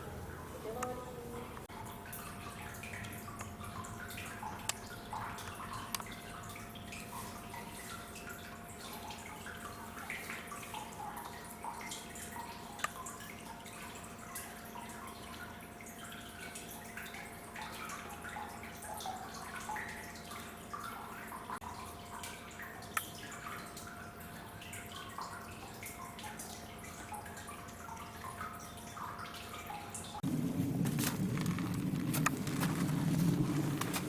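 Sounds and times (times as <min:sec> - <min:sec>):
water dripping and clicking: 0:00.0 - 0:34.0
steady low hum: 0:30.0 - 0:34.0.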